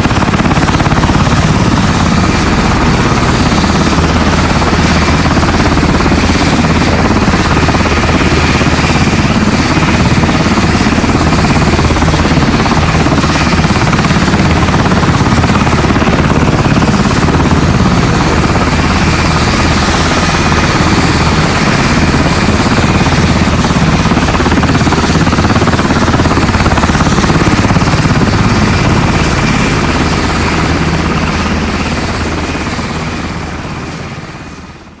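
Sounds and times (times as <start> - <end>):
helicopter rotor and engine: 0.0 - 35.0.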